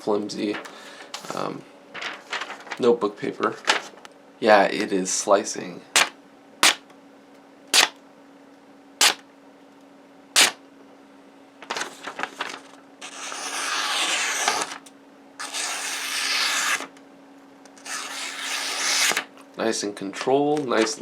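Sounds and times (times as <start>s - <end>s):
faint steady hum: 0.0s - 21.0s
paper crackling: 0.4s - 4.0s, 11.6s - 14.8s, 17.8s - 19.3s
knife snapping through paper: 6.0s - 6.8s, 7.8s - 8.0s, 9.0s - 9.2s, 10.4s - 10.6s
knife rasping through paper: 13.0s - 14.8s, 15.4s - 16.9s, 17.8s - 19.2s.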